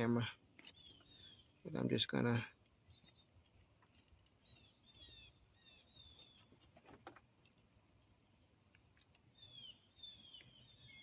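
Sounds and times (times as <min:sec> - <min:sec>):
faint bird chirps: 0:00.1 - 0:03.6, 0:04.2 - 0:06.7, 0:08.2 - 0:11.0.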